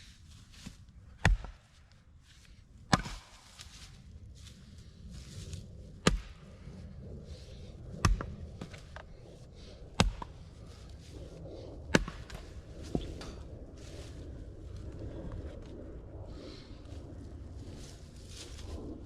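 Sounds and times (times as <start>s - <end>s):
axe chopping wood: 1.2s - 1.6s, 2.9s - 3.4s, 6.0s - 6.4s, 8.0s - 8.8s, 10.0s - 10.3s, 11.9s - 13.1s.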